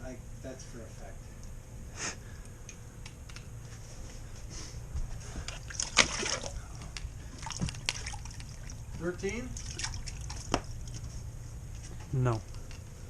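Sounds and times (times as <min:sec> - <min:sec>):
steady low hum: 0:00.0 - 0:13.0
water splashing and dripping: 0:05.4 - 0:11.0.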